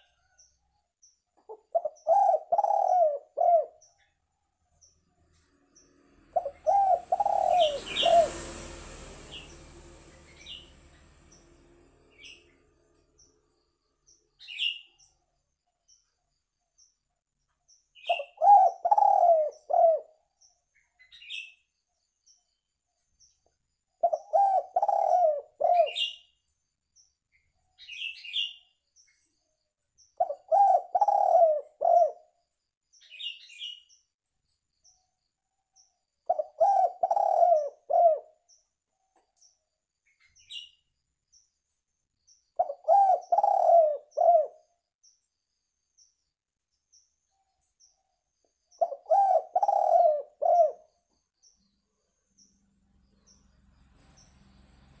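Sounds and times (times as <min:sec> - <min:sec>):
dove cooing: 0:01.5 - 0:03.8, 0:06.3 - 0:08.4, 0:18.1 - 0:20.1, 0:24.0 - 0:26.2, 0:30.2 - 0:32.3, 0:36.3 - 0:38.4, 0:42.6 - 0:44.6, 0:48.8 - 0:50.9.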